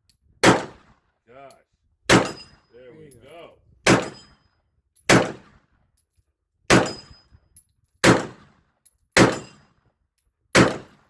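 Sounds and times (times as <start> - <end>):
pistol shots echoing: 0.4 - 0.8, 2.1 - 2.5, 3.8 - 4.3, 5.1 - 5.6, 6.7 - 7.1, 8.0 - 8.5, 9.2 - 9.6, 10.6 - 11.0.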